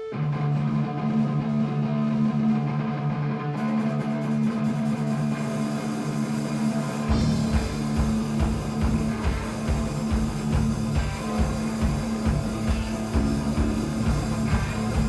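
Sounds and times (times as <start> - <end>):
electric guitar chords: 0.0 - 15.0
cymbals: 4.2 - 15.0
low drum beat: 7.1 - 15.0.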